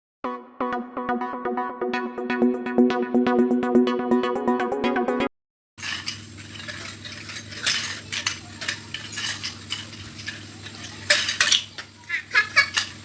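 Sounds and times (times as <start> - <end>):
small hard objects clinking: 5.8 - 13.0.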